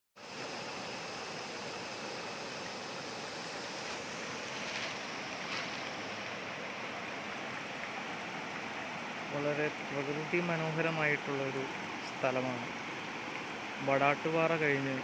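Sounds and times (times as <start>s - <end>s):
high-pitched whine: 0.2s - 6.7s
river water rushing: 0.4s - 15.0s.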